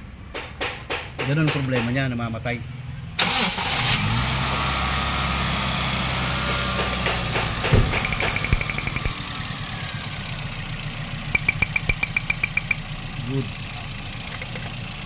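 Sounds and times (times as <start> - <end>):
thump: 7.6 - 8.3
rapid even ticking: 7.9 - 9.1, 11.4 - 12.9.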